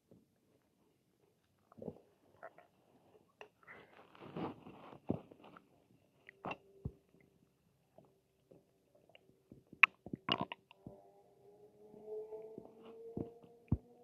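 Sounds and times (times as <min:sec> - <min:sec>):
stomach gurgling: 0:01.6 - 0:02.8, 0:09.0 - 0:10.8.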